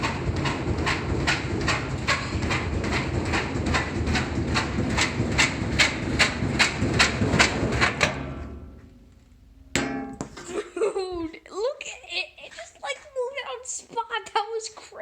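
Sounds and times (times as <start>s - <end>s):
washing machine low rumble: 0.0s - 9.0s
washing machine drum banging: 0.0s - 10.7s.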